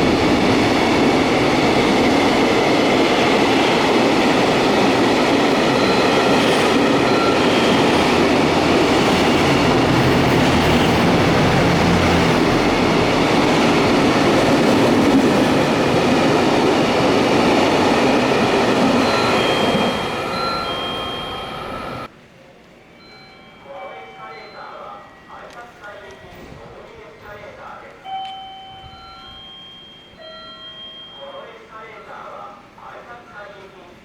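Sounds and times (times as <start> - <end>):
train rumbling on rails: 0.0 - 22.1
train wheel squeaks: 5.6 - 8.2.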